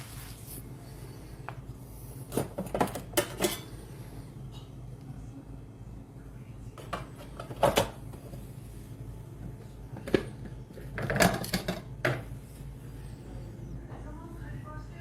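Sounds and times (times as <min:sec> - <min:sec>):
steady low hum: 0:00.0 - 0:15.0
kitchen items knocking and clattering: 0:02.3 - 0:03.7, 0:06.8 - 0:08.4, 0:09.4 - 0:12.3.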